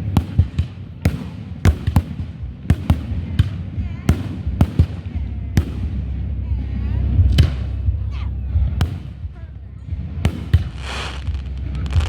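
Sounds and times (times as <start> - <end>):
low rumble: 2.2 - 12.0
firework shells bursting bangs: 10.2 - 12.0.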